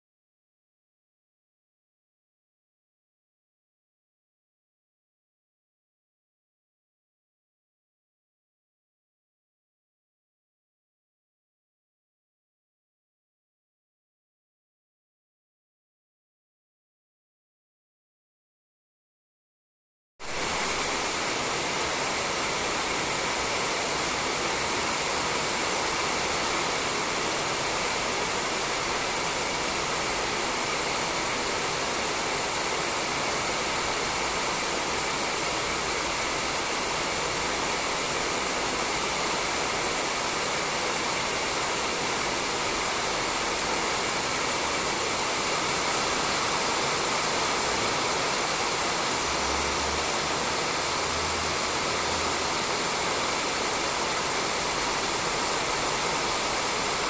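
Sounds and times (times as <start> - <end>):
rain falling on a roof: 20.2 - 57.0.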